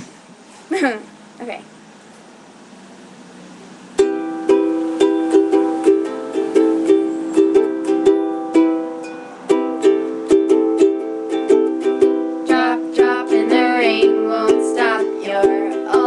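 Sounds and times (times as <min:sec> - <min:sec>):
acoustic strings strumming chords: 0:03.8 - 0:16.0.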